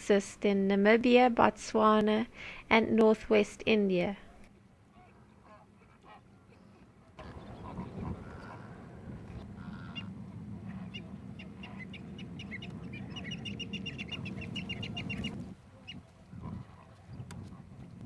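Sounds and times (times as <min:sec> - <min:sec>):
flamingos calling: 0:05.0 - 0:17.7
steady low rumble: 0:07.2 - 0:18.0.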